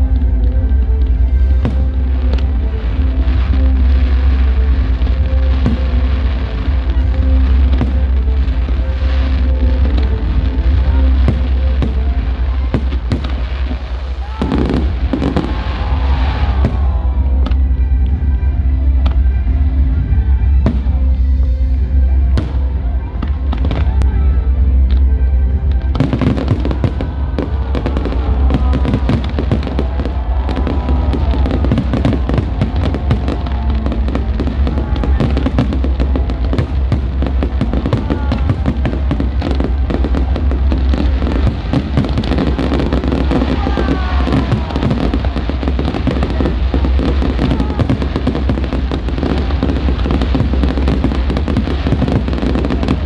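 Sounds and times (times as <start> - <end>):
fireworks bursts and crackles: 0.0 - 19.6, 20.4 - 24.3, 25.8 - 53.0
music playing: 0.0 - 53.0
whistling fireworks: 5.3 - 8.2, 11.1 - 17.2, 26.0 - 53.0.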